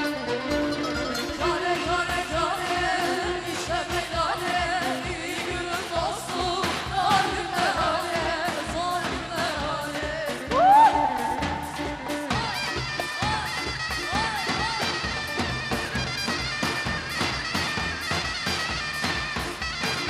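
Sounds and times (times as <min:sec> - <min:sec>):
person singing pop-folk song: 0:00.0 - 0:15.5
band playing quick beat: 0:00.0 - 0:20.0.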